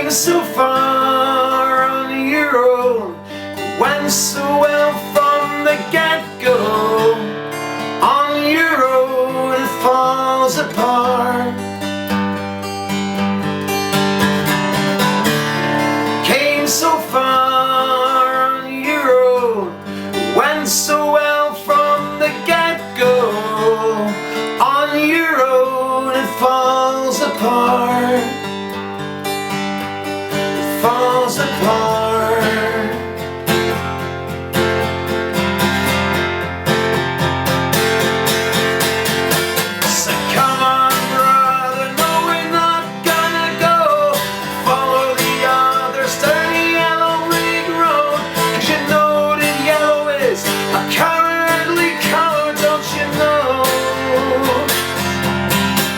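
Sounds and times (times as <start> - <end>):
wordless voice singing: 0.0 - 11.8, 15.2 - 28.8, 30.1 - 33.8, 38.2 - 55.9
acoustic guitar strummed and picked: 0.0 - 55.9.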